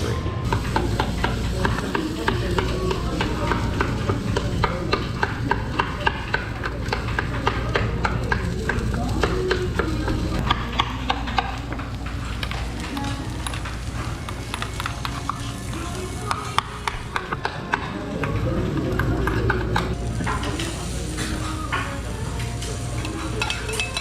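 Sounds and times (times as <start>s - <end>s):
steady low hum: 0.4s - 17.4s, 18.4s - 24.0s
metal spatulas scraping griddle: 19.8s - 24.0s.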